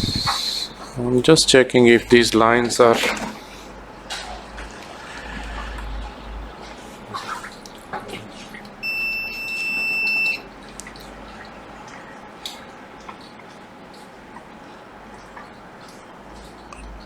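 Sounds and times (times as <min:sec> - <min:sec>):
multimeter high-pitched beep: 0:08.8 - 0:10.4.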